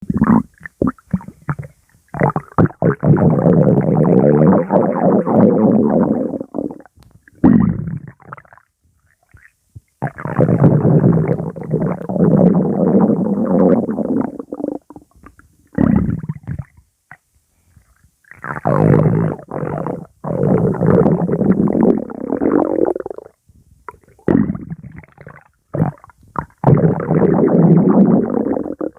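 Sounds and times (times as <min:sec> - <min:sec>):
stomach growling: 0:00.0 - 0:17.2, 0:17.9 - 0:28.9.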